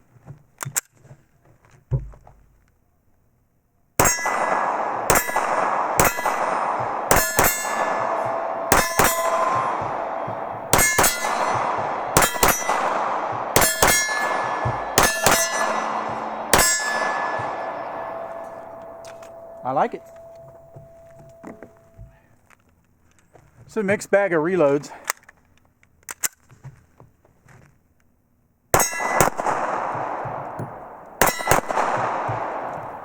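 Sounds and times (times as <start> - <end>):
pistol shots with metallic ringing: 4.0 - 22.0, 28.8 - 33.0.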